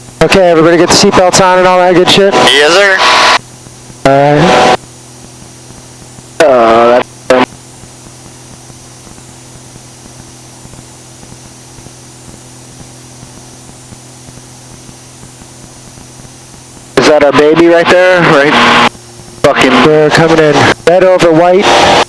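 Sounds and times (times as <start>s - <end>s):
aircraft engine drone: 0.0s - 22.0s
intercom hum and hiss: 0.0s - 22.0s
clipped voice: 4.0s - 4.6s, 6.4s - 7.5s.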